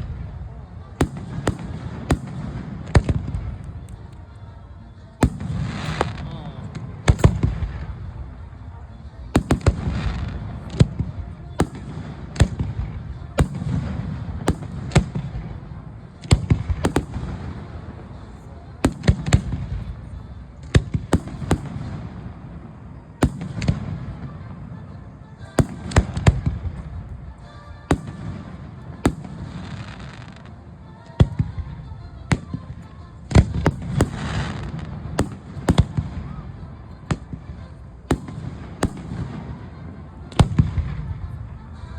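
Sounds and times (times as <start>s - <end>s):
fireworks bangs: 0.9s - 3.7s, 5.2s - 8.1s, 9.4s - 24.4s, 25.5s - 27.1s, 33.4s - 41.2s.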